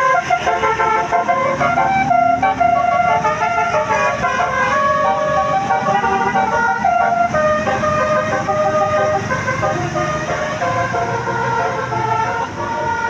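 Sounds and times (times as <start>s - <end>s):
multi-tone bus horn tune: 0.0s - 13.0s.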